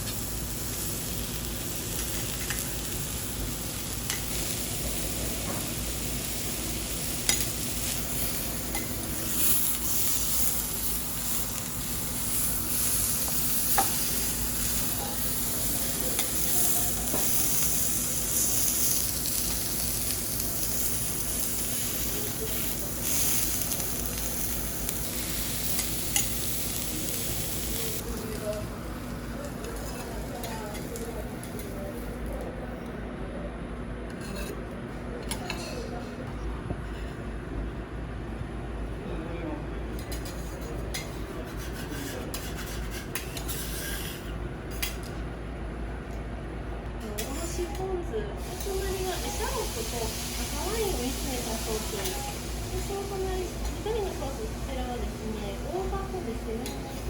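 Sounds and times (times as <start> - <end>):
food sizzling on griddle: 0.0 - 31.3, 48.4 - 57.0
metal spatulas scraping griddle: 40.2 - 44.8.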